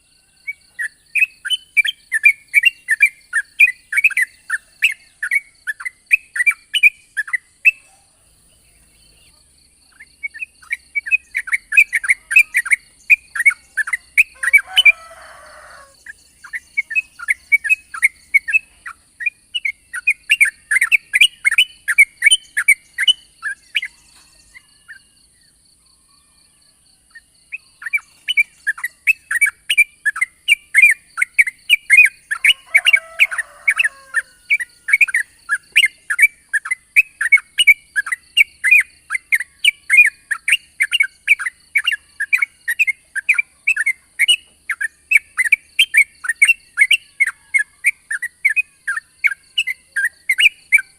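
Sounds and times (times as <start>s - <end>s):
lower descending bird calls: 0.0s - 25.2s, 25.9s - 37.4s
bird singing chattering notes: 0.0s - 25.6s, 27.1s - 50.9s.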